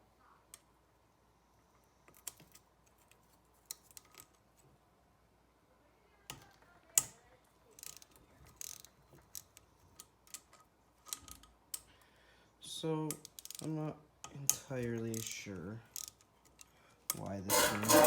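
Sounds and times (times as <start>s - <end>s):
metal parts clinking: 17.5s - 18.0s.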